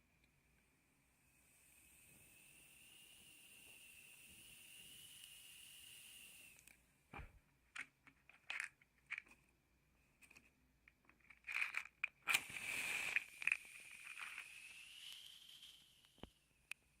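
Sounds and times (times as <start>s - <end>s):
matches clicking and scratching: 7.8s - 9.4s, 10.2s - 16.2s
match struck and flaring: 12.2s - 16.4s.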